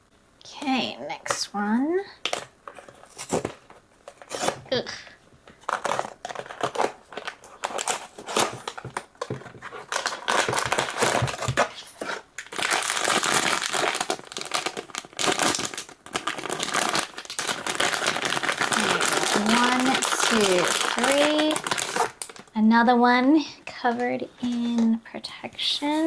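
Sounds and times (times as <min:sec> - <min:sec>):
plastic wrapping crinkling: 0:05.5 - 0:22.6.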